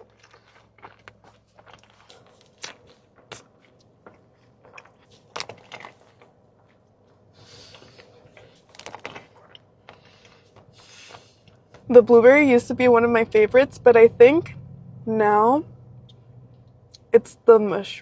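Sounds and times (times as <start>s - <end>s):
chewing and mouth clicks: 0.0s - 11.7s.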